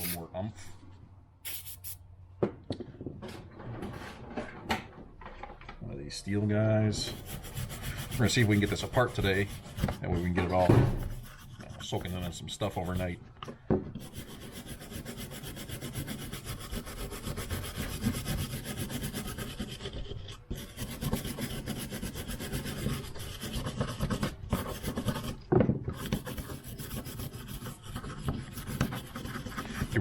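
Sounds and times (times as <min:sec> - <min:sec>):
wire brush scrubbing metal: 0:07.0 - 0:13.1
sharp knock: 0:10.6 - 0:11.2.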